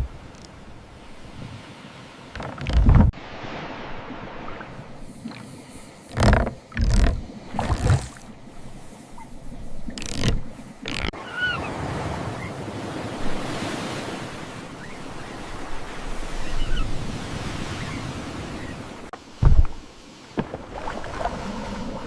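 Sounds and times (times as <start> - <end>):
rushing water: 0.0 - 22.0
wind: 0.0 - 22.0
loud low thump: 19.4 - 19.8.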